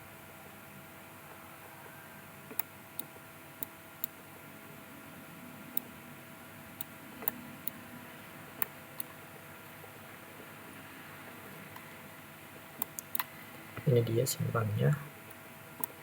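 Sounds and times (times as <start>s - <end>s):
faint steady hum: 0.0s - 16.0s
computer mouse clicks: 2.5s - 4.2s, 6.8s - 7.8s, 12.8s - 13.3s.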